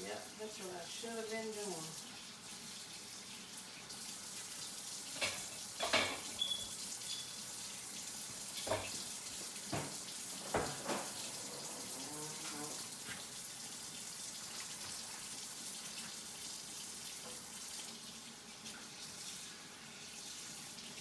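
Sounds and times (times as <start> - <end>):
knocks and clatters in sink: 5.1 - 6.6, 8.6 - 12.9
tap running into sink: 8.6 - 13.2.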